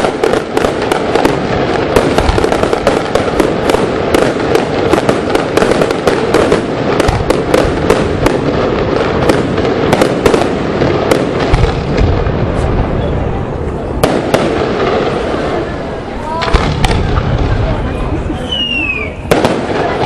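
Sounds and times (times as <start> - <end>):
fireworks crackling: 0.0 - 20.0
fireworks cracks and bangs: 0.0 - 20.0.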